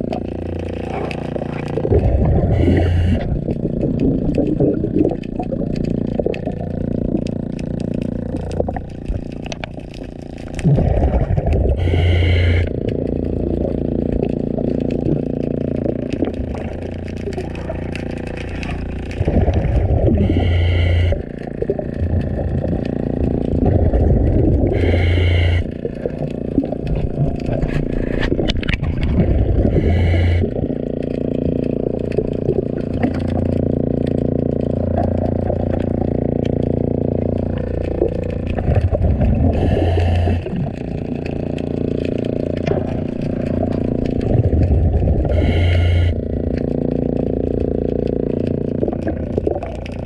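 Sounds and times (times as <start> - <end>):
gurgling exhaust bubbles: 0.0 - 50.0
regulator hissing inhale: 11.8 - 12.7, 20.2 - 21.2, 24.7 - 25.7, 29.7 - 30.5, 39.6 - 40.6, 45.3 - 46.2.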